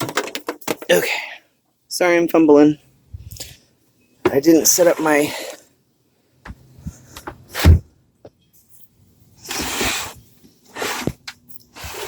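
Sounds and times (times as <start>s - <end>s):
heavy thump: 7.2s - 7.9s
fridge scraping on floor: 9.4s - 12.0s.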